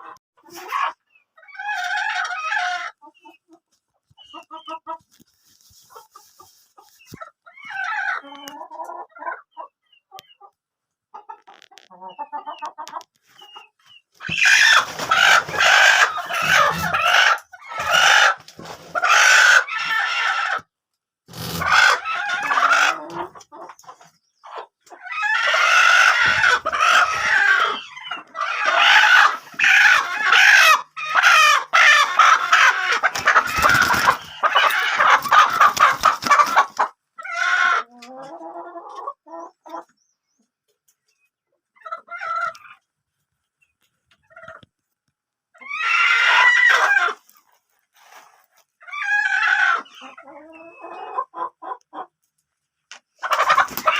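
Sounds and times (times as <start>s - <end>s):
chickens clucking: 0.0s - 20.7s, 21.3s - 53.9s
chickens squawking and cackling: 0.0s - 53.9s.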